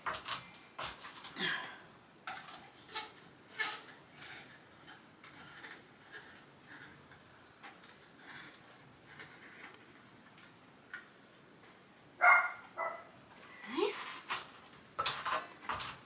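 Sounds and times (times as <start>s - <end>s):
metal tools clinking: 2.2s - 10.6s.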